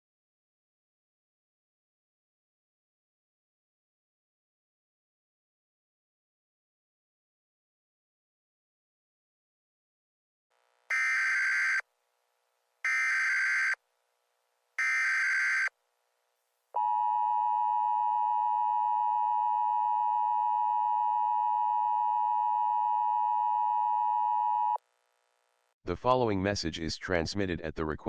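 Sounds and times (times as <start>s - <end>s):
long steady attention tone: 10.6s - 25.7s.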